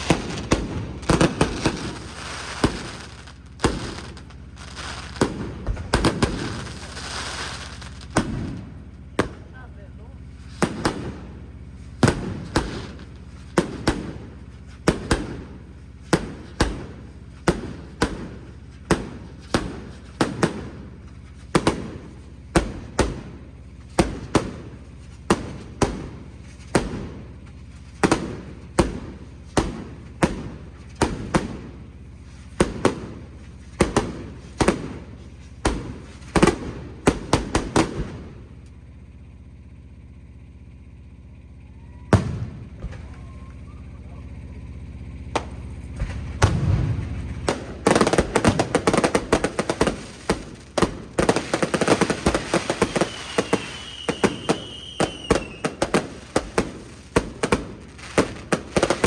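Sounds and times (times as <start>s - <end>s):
fireworks bangs: 0.0s - 59.0s.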